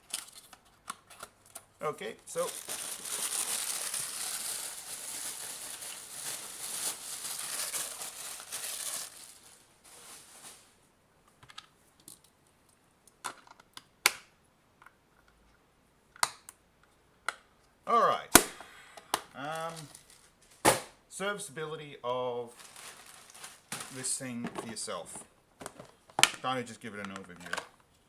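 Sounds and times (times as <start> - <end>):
rustling and scraping handling: 0.0 - 10.8, 19.5 - 20.7, 22.5 - 26.3, 26.9 - 28.0.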